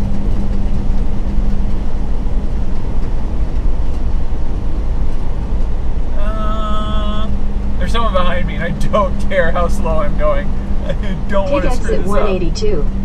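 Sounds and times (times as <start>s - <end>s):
road rumble: 0.0s - 13.0s
steady hum: 0.0s - 13.0s
truck engine drone: 0.0s - 13.0s.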